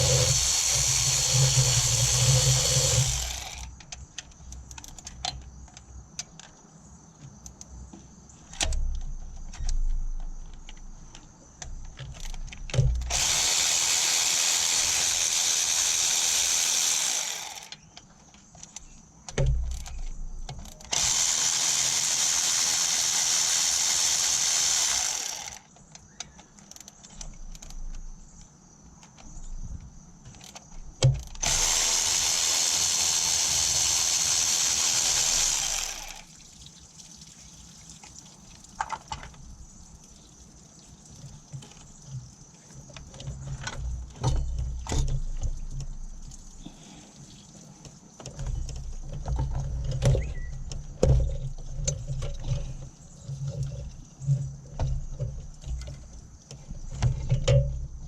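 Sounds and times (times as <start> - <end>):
tools clicking and knocking: 0.0 - 6.6.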